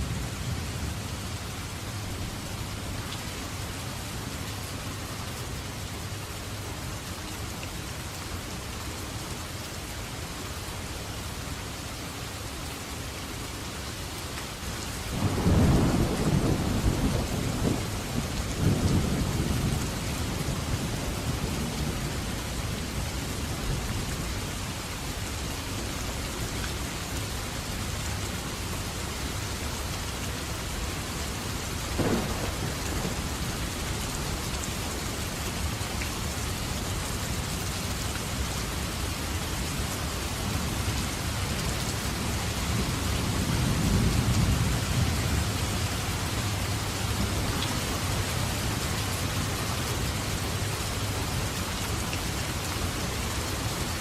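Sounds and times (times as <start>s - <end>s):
heavy rain: 0.0s - 54.0s
thunder rumbling: 15.2s - 22.0s, 32.0s - 34.2s.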